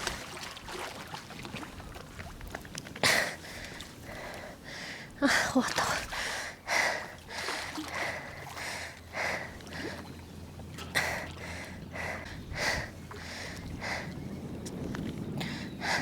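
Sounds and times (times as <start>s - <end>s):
person breathing hard: 3.0s - 5.5s, 6.1s - 10.1s, 11.0s - 14.2s, 15.4s - 16.0s.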